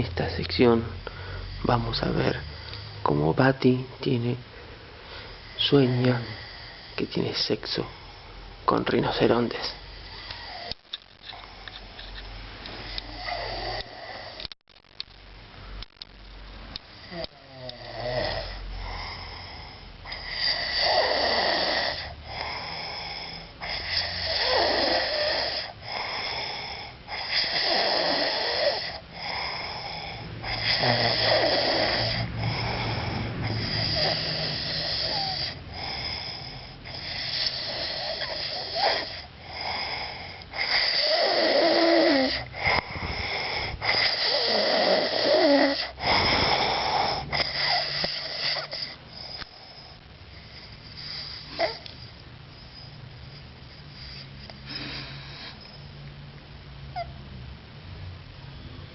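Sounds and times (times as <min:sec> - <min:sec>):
rasping snores: 0:05.3 - 0:08.3, 0:09.3 - 0:11.7, 0:12.8 - 0:14.5, 0:17.0 - 0:52.1.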